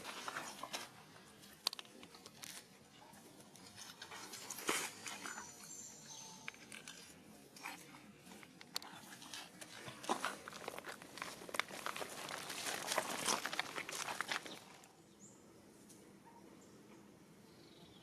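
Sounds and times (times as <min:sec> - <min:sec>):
sharp clicks and crunching: 0:00.0 - 0:02.7, 0:06.4 - 0:14.9.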